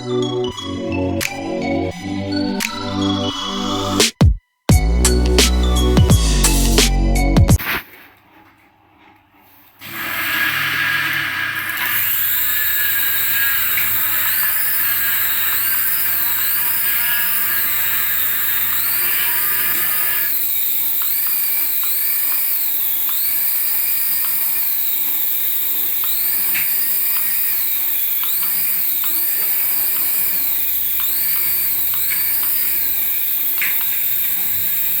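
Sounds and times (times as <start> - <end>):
small electric motor whining: 9.8 - 35.0.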